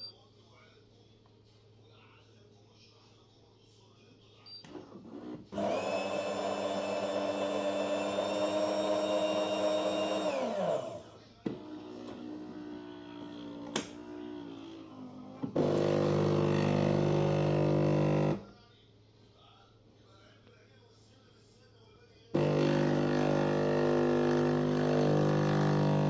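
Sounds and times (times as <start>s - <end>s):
coffee machine motor whirring: 4.7s - 18.5s, 22.4s - 26.0s
machine hum: 5.1s - 18.4s, 22.4s - 26.0s.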